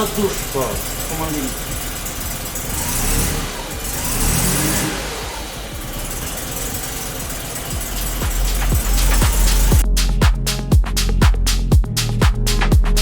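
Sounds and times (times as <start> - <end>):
car engine revving: 0.0 - 9.8.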